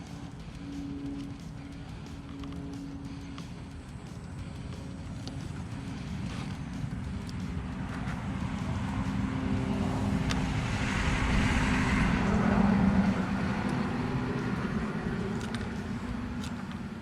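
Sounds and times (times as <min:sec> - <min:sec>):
passing vehicle engine rumble: 0:00.0 - 0:17.0.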